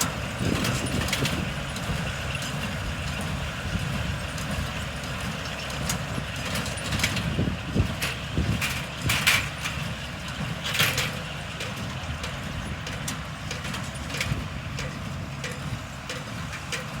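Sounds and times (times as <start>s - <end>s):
tractor engine running: 0.0s - 17.0s
knocks and rattles: 6.4s - 17.0s.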